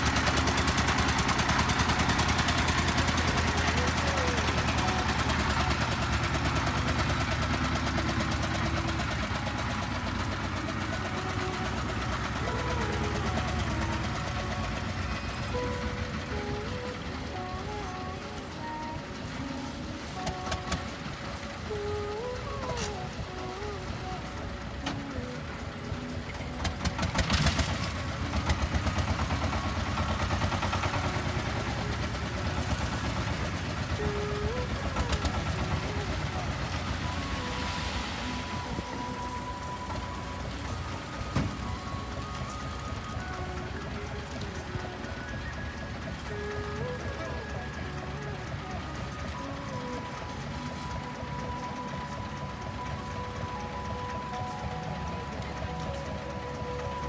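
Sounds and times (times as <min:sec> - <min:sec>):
vehicle engine running: 0:00.0 - 0:57.0
clatter: 0:24.8 - 0:37.6.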